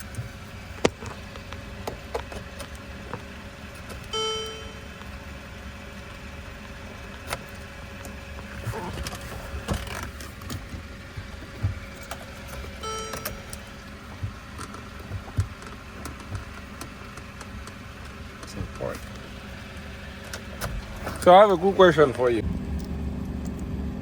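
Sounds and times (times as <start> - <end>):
short electronic beep: 4.1 - 4.9, 12.8 - 13.5
clicks and light taps: 6.0 - 22.2.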